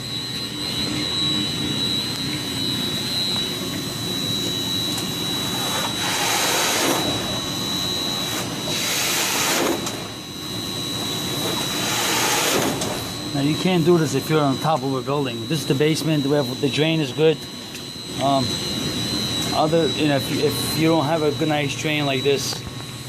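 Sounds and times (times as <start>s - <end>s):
high-pitched whine: 0.0s - 23.0s
machinery drone: 0.0s - 23.0s.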